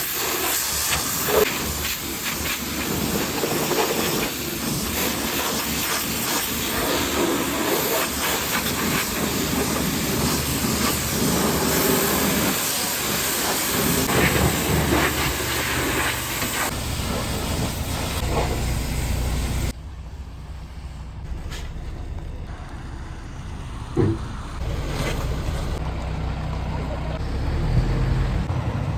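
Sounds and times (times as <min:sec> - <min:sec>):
pressure washer spraying water: 0:00.0 - 0:19.8.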